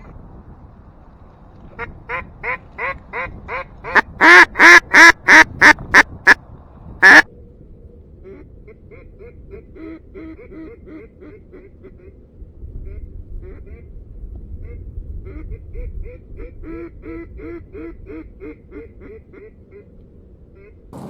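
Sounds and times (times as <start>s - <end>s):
duck call quacks: 1.8s - 6.4s, 7.0s - 7.3s.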